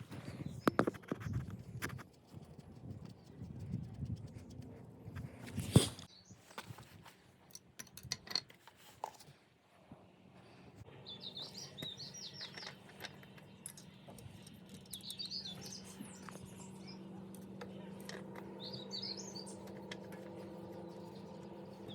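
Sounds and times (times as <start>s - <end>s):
steady low hum: 10.4s - 21.9s
small birds chirping: 10.9s - 21.9s.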